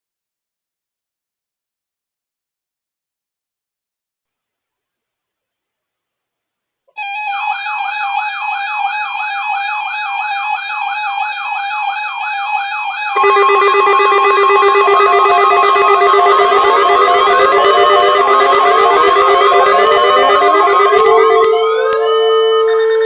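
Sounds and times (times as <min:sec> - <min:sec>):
warbling siren tone: 0:07.0 - 0:23.0
steady high beeps: 0:11.0 - 0:23.0.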